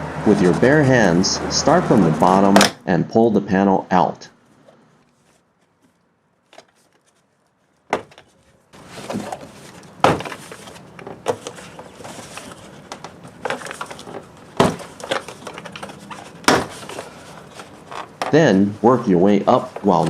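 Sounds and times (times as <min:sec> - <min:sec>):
plastic panel scraping and rattling: 0:08.0 - 0:18.4.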